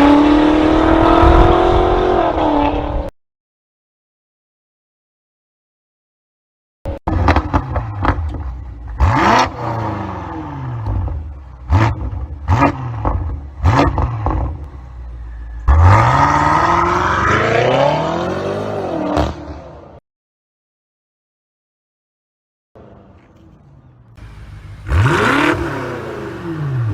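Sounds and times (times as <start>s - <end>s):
car engine revving: 24.2s - 26.9s.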